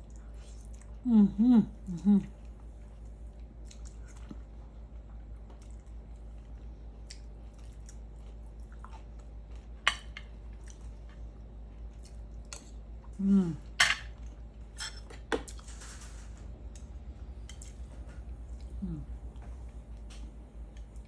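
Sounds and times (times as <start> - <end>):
wet chewing sounds: 0.0 - 1.0, 1.8 - 13.2, 16.6 - 21.0.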